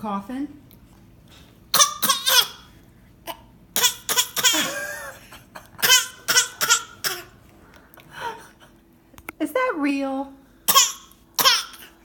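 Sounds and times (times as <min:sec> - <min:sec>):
child pretend coughing: 0:01.7 - 0:05.2, 0:05.8 - 0:07.4, 0:10.7 - 0:12.0.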